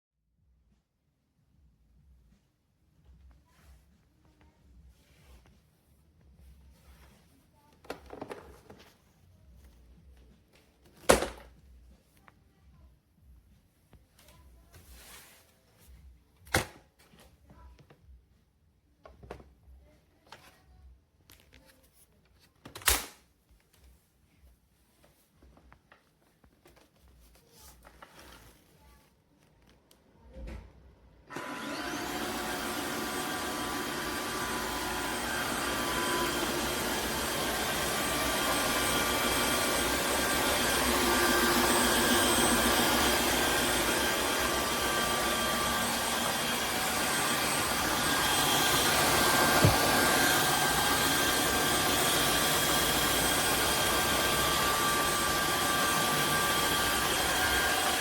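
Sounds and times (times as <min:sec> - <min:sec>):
vacuum cleaner running: 0:31.3 - 0:58.0.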